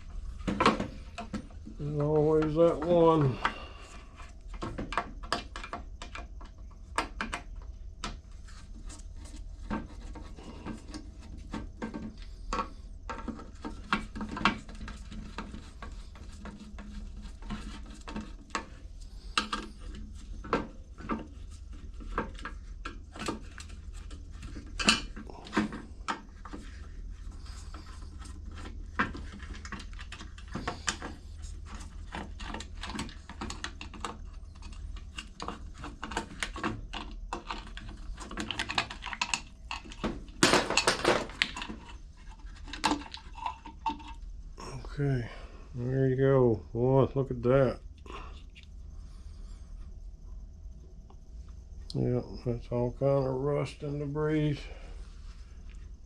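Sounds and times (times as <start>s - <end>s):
screwdriver and metal parts clinking: 31.7s - 42.0s.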